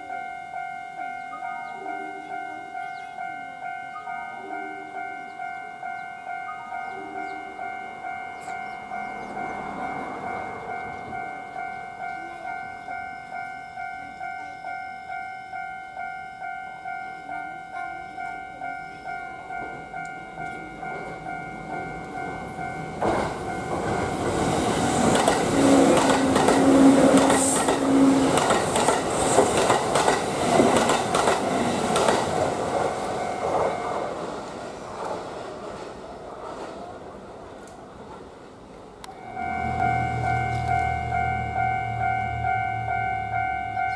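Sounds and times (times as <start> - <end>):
low steady tone: 0.0 - 24.1, 39.0 - 43.9
railroad crossing alarm bell: 0.0 - 34.9, 39.0 - 43.9
train wheels clattering: 19.6 - 36.8.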